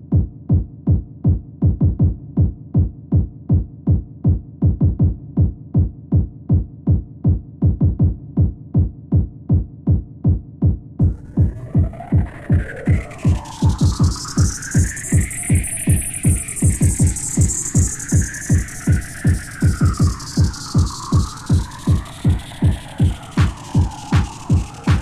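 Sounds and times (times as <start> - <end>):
electronic kick drum thuds: 0.0 - 25.0
electronic music instruments: 11.0 - 25.0.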